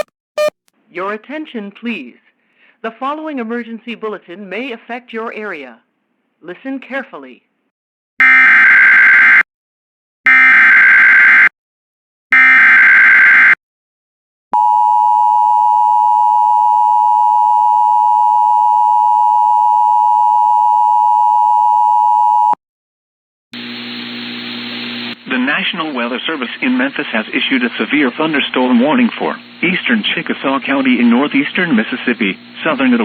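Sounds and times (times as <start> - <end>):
data bursts: 0.0 - 0.5
two-tone alert signal: 0.0 - 0.5
broadcast hiss: 23.6 - 33.0.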